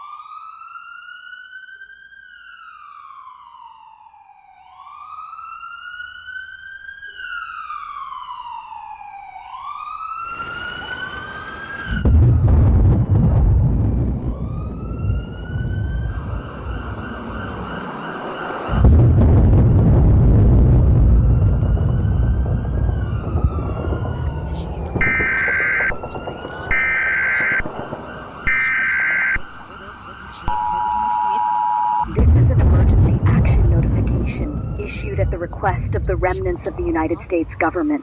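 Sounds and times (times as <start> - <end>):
siren wailing: 0.0 - 38.0
loud low rumble: 12.0 - 17.3, 18.7 - 26.8, 32.0 - 37.6.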